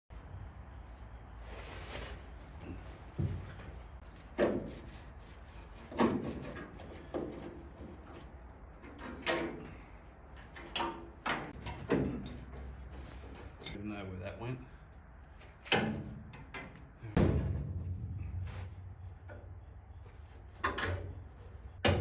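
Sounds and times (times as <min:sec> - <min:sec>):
knocks and clunks of tools: 0:08.8 - 0:09.8, 0:10.4 - 0:13.8, 0:20.1 - 0:22.0.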